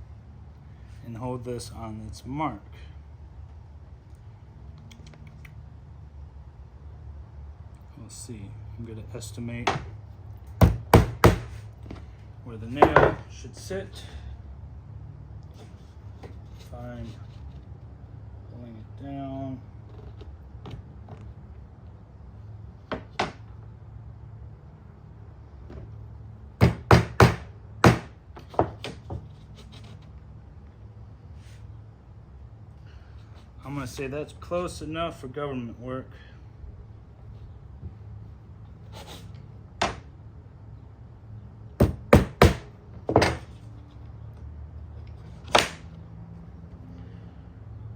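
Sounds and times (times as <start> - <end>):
hammer driving nail into wood: 10.6 - 11.6, 26.6 - 28.2, 41.8 - 43.5, 45.5 - 45.8.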